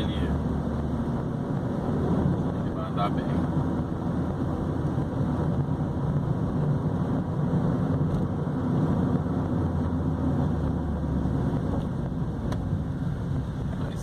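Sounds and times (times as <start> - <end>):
car engine running: 0.0 - 14.0
road noise inside car: 0.0 - 14.0.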